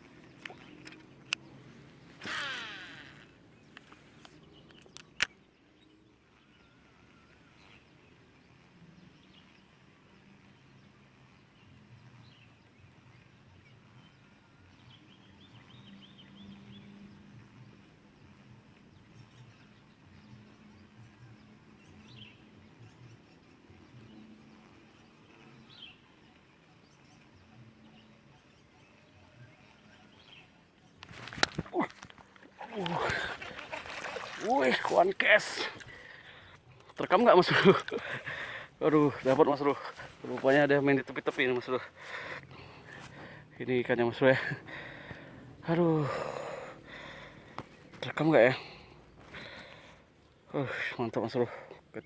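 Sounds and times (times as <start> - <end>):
faint bird calls: 0.0 - 5.4, 24.6 - 52.0.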